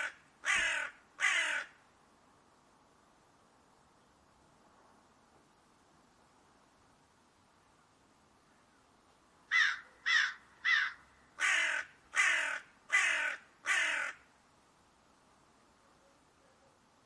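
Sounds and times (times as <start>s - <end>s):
crow cawing: 0.0s - 1.8s, 9.5s - 14.3s.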